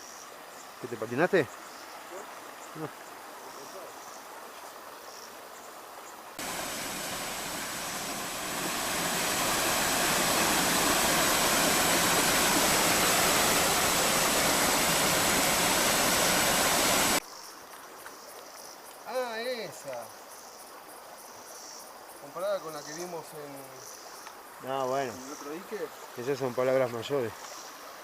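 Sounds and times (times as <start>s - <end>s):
waterfall rushing: 6.4s - 17.2s.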